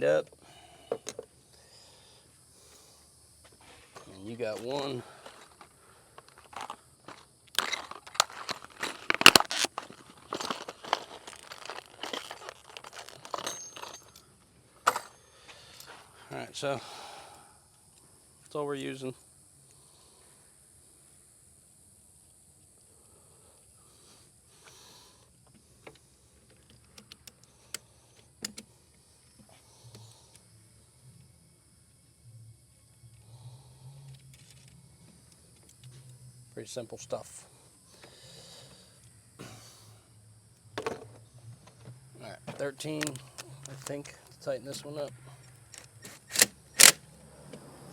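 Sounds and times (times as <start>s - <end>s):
packaging crinkling and tearing: 7.5s - 13.5s
hand tools clicking and tapping: 14.8s - 16.0s, 25.5s - 28.7s
sharp clicks: 45.7s - 47.0s.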